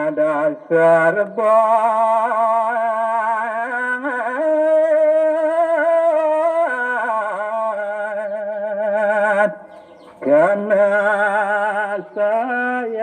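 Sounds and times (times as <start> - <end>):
man chanting through horn speaker: 0.0 - 13.0.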